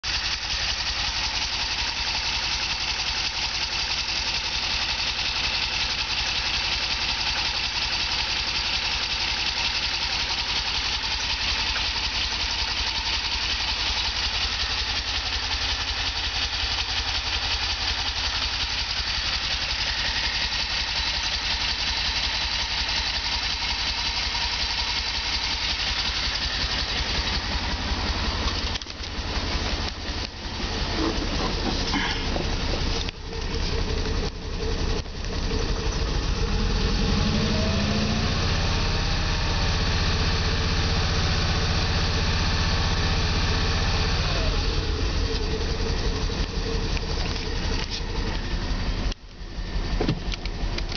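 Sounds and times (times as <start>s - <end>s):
car engine rough idle: 0.0s - 50.9s.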